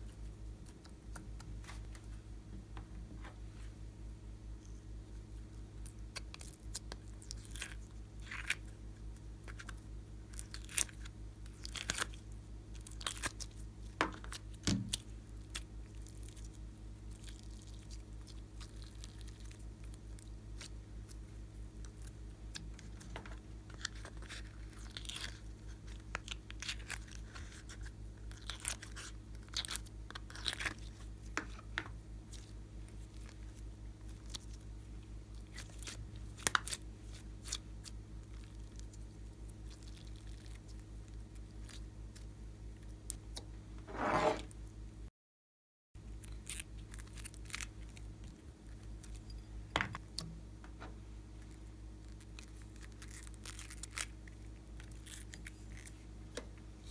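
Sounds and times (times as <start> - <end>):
low electrical hum: 0.0 - 45.1, 46.0 - 56.9
slime crackling and popping: 9.4 - 21.2, 23.8 - 31.3, 51.4 - 55.9.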